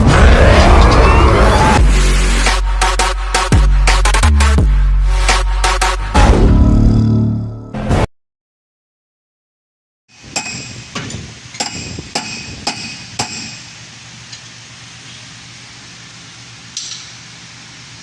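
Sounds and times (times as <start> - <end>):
sharp metallic knocks: 10.2 - 13.7.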